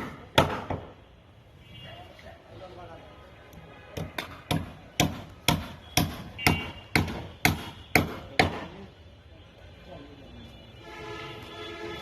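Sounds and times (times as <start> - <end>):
hammer blows ringing: 3.9 - 8.7.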